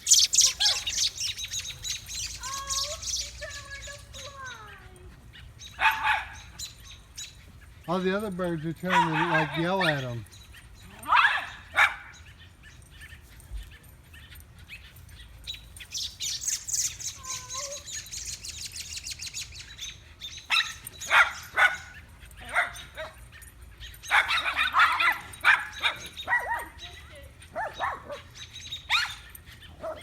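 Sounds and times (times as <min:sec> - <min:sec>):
puppy barking and yapping: 0:00.0 - 0:02.2, 0:05.6 - 0:07.0, 0:08.6 - 0:10.2, 0:11.0 - 0:12.2, 0:20.4 - 0:30.0
birds alarm chatter: 0:00.0 - 0:30.0.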